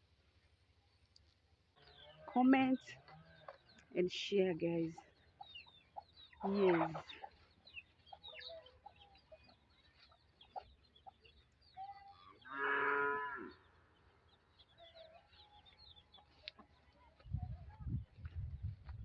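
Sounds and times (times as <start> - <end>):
faint bird chirps: 5.0 - 17.5
cow mooing: 12.4 - 13.6.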